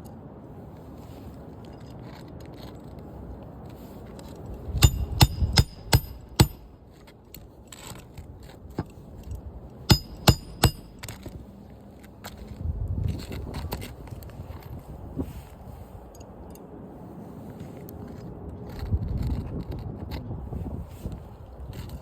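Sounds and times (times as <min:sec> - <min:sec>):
hammer striking nails: 0:04.8 - 0:06.7, 0:09.9 - 0:11.1.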